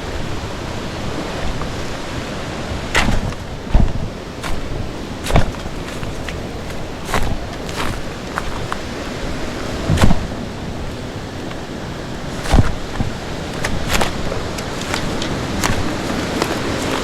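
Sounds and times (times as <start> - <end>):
creek water rushing: 0.0 - 17.0
sharp knocks: 3.0 - 6.4, 9.9 - 10.3, 12.4 - 16.0.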